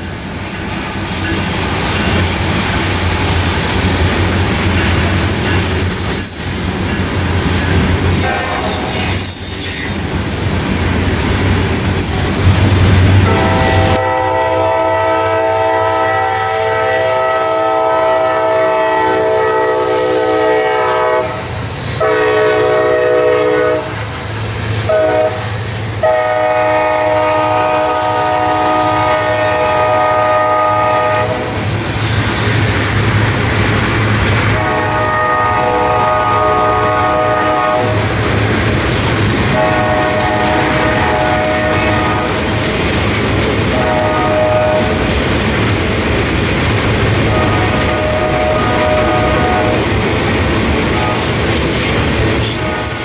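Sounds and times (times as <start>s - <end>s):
train rumbling past: 0.0s - 53.0s
locomotive air horn blasts: 8.1s - 10.0s, 13.1s - 24.0s, 24.9s - 31.6s, 34.5s - 38.0s, 39.5s - 42.5s, 43.7s - 45.0s, 47.2s - 49.9s, 50.9s - 51.5s, 52.4s - 53.0s.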